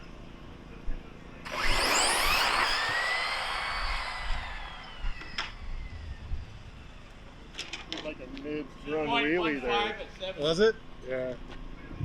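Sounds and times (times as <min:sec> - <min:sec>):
rc car motor whine: 0:01.5 - 0:07.6.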